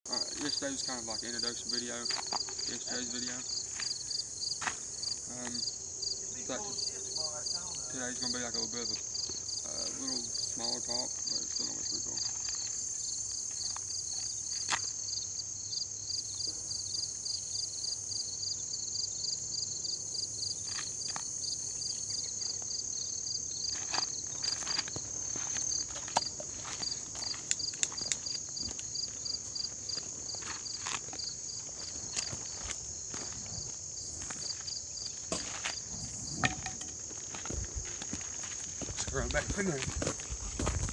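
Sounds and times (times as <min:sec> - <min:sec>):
insects trilling: 0:00.1 - 0:40.9
footsteps: 0:00.2 - 0:05.6, 0:23.6 - 0:40.9.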